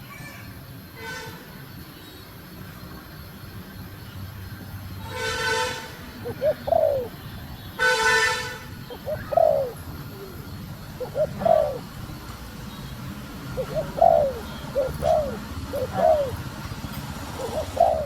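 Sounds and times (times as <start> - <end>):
vehicle horn honks: 5.0 - 6.0, 7.6 - 8.8
dove cooing: 6.1 - 7.2, 8.8 - 12.4, 13.1 - 18.0.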